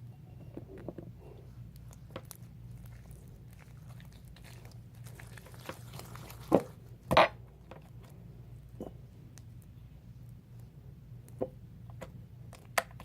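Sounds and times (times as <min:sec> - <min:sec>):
steady low hum: 0:00.0 - 0:13.0
slime squelching by hand: 0:01.3 - 0:07.0.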